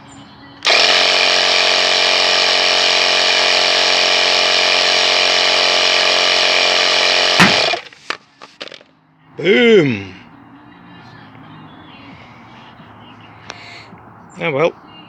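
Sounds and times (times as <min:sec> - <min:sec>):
power tool motor running: 0:00.6 - 0:08.0.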